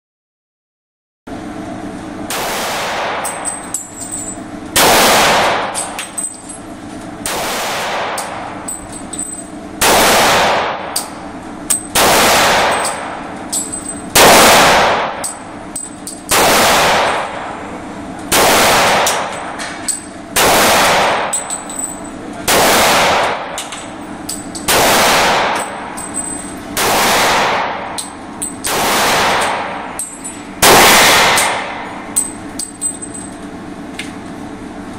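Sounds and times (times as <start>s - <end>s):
handgun shots: 2.3s - 3.6s, 4.8s - 6.2s, 7.2s - 8.5s, 9.8s - 11.1s, 11.7s - 13.2s, 16.3s - 17.4s, 18.3s - 19.8s, 20.4s - 21.5s, 22.5s - 23.9s, 24.6s - 25.8s, 26.8s - 32.7s.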